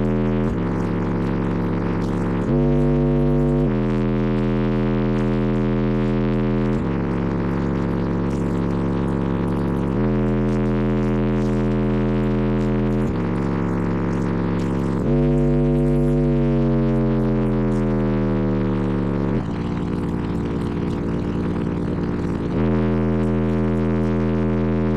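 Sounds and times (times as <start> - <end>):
bass-heavy music through subwoofers: 0.0 - 24.9.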